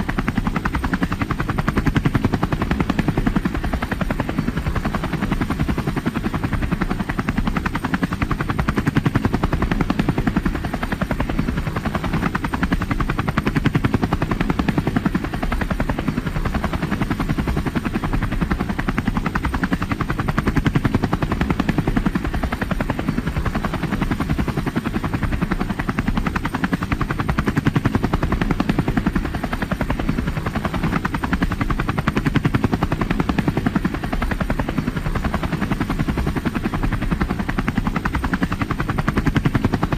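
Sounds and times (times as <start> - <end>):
helicopter engine noise: 0.0 - 39.9
helicopter rotor blades chopping: 0.0 - 39.9.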